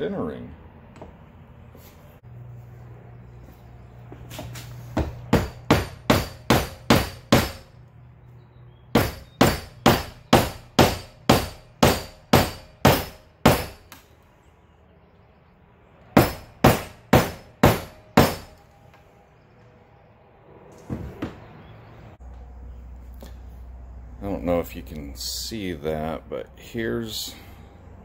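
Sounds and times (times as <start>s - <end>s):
hammer blows on metal: 8.9s - 13.9s.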